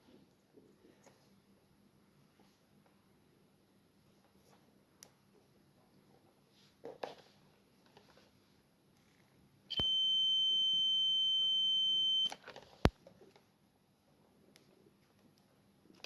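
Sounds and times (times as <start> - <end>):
high electronic beep: 9.7 - 12.3.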